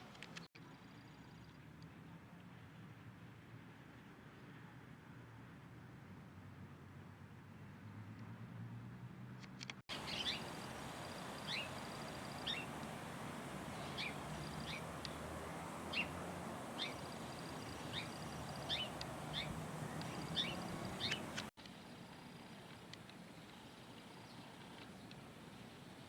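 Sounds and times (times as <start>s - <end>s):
small songbird chirping: 9.9s - 21.5s
outdoor hiss: 9.9s - 26.0s.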